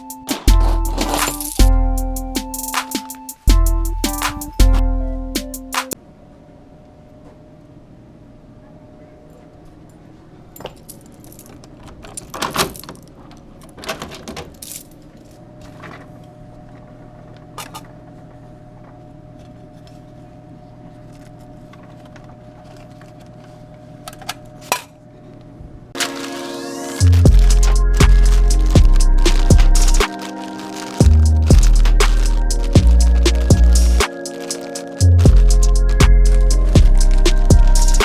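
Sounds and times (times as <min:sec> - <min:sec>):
coins clinking and metal jangling: 0:00.0 - 0:01.6, 0:10.6 - 0:13.0, 0:27.0 - 0:38.0
steady hum: 0:25.0 - 0:38.0.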